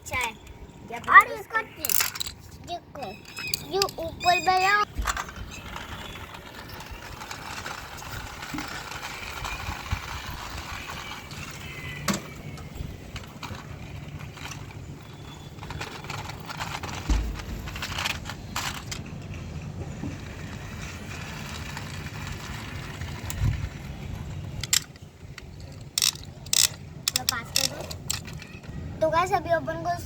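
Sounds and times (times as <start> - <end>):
faint steady background noise: 0.0 - 30.0
plastic toy vehicles handled: 1.0 - 28.7
sharp clicks: 24.6 - 28.7.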